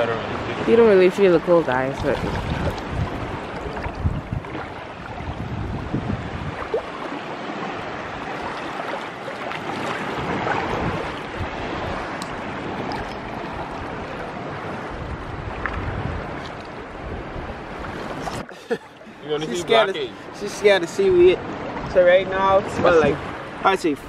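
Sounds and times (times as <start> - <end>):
wind buffeting microphone: 0.0 - 18.5
sea water washing at shore: 0.0 - 24.0.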